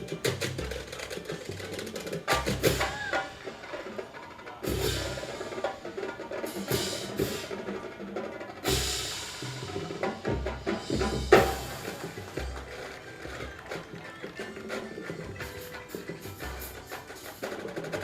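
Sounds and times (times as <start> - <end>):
drum and bugle corps playing: 0.0 - 18.0
loud drum hits: 8.7 - 12.8.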